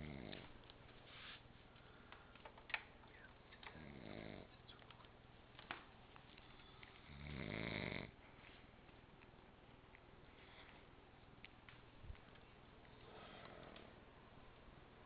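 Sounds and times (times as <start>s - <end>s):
woman snoring: 3.8s - 4.5s, 7.1s - 8.2s.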